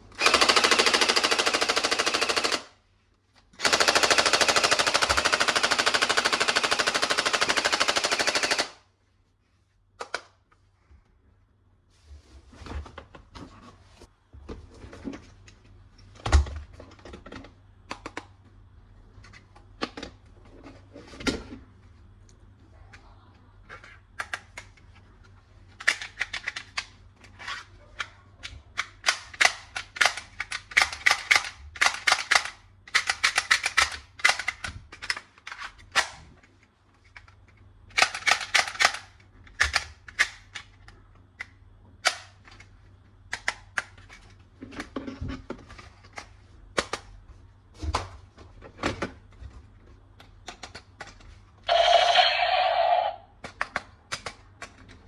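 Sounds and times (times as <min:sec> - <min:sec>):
plastic toy guns clicking: 0:00.1 - 0:02.7, 0:03.6 - 0:08.8, 0:28.8 - 0:36.2, 0:37.2 - 0:40.8, 0:43.3 - 0:44.0, 0:51.7 - 0:55.0.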